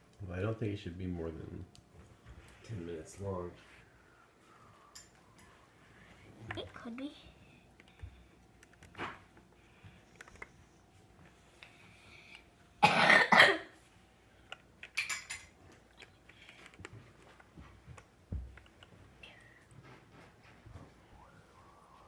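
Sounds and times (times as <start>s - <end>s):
person coughing: 12.8s - 13.7s.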